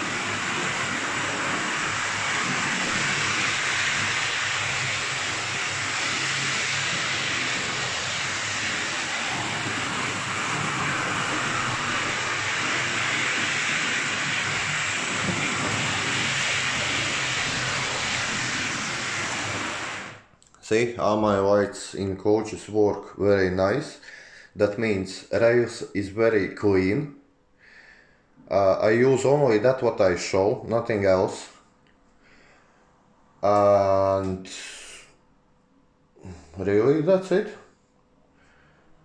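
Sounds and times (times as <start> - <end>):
low hum: 0.0 - 20.2
model train whirring on track: 0.0 - 20.3.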